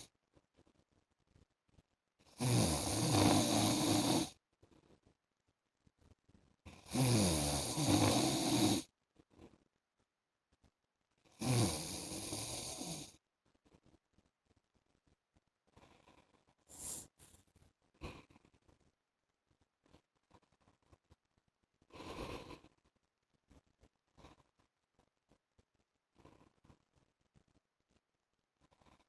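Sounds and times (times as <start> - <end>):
man snoring: 2.4 - 4.3, 6.8 - 8.9, 11.4 - 13.1
quiet breathing: 15.7 - 18.9, 21.8 - 24.7, 26.0 - 27.2, 28.6 - 29.0.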